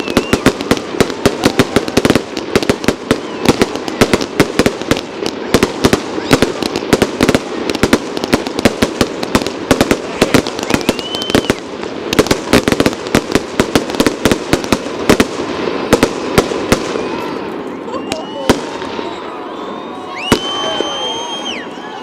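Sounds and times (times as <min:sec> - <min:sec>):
rising firework whistle: 0:00.0 - 0:13.1, 0:14.5 - 0:22.0
fireworks bangs and crackles: 0:00.0 - 0:22.0.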